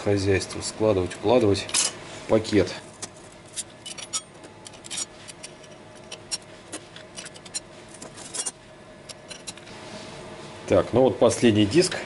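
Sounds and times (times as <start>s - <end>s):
metal clutch discs clinking: 3.5s - 9.6s.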